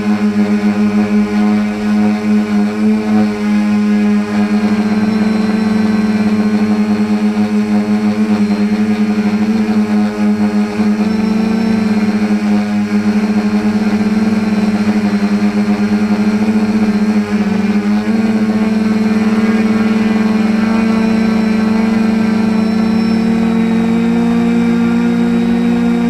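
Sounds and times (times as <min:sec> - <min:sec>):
quadcopter motors buzzing: 0:00.0 - 0:26.0.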